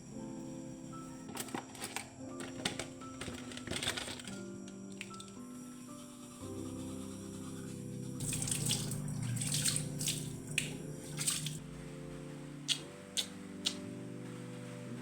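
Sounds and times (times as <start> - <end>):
soft background music: 0.0 - 15.0
water splashing and running: 8.2 - 11.6.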